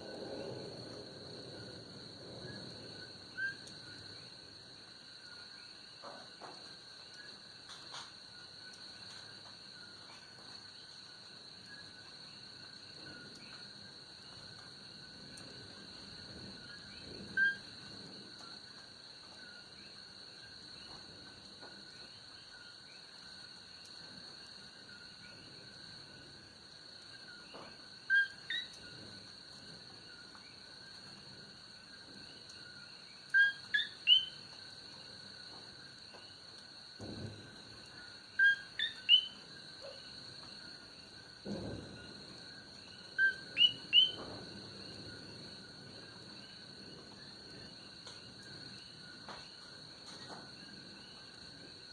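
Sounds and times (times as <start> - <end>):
night chorus of frogs and insects: 0.0 - 51.9
frogs calling two-note co-qui: 33.3 - 34.4, 38.4 - 39.4.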